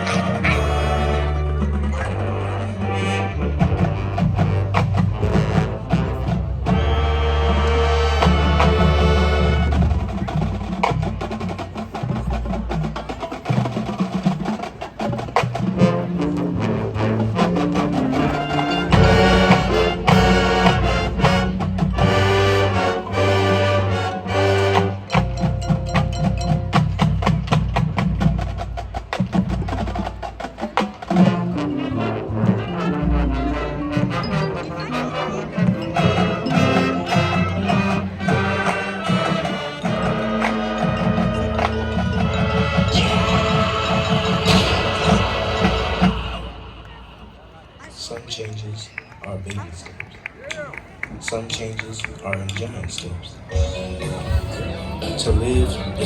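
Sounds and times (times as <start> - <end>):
marching band playing: 0.0 - 48.4, 49.6 - 56.0
sharp percussion hits: 39.8 - 46.7.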